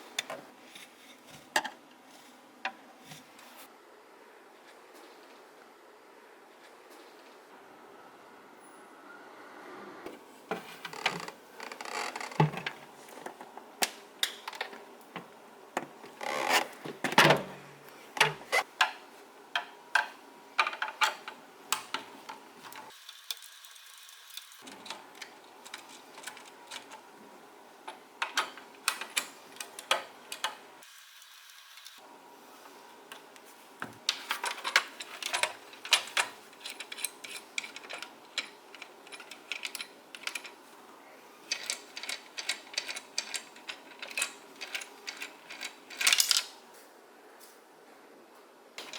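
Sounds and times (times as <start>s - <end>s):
clicks knocks and scrapes of parts: 0.1s - 3.6s, 10.5s - 17.5s, 18.1s - 19.0s, 19.6s - 27.1s, 27.9s - 30.6s, 33.1s - 40.6s, 41.4s - 46.5s.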